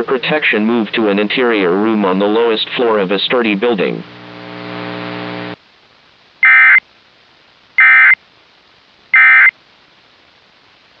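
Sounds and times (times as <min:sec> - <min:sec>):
faint hiss: 0:00.0 - 0:11.0
harsh warbling data beeps: 0:06.4 - 0:06.8, 0:07.8 - 0:08.2, 0:09.2 - 0:09.5.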